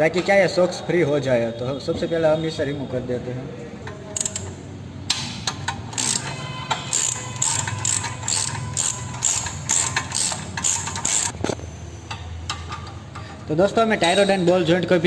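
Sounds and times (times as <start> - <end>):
ratchet wrench clicking: 4.2 - 11.4.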